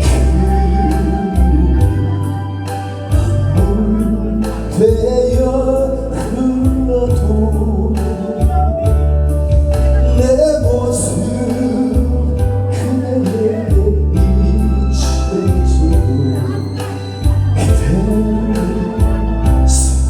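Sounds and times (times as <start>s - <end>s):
drum beat: 0.0s - 2.1s
bass: 0.0s - 20.0s
person singing: 0.0s - 20.0s.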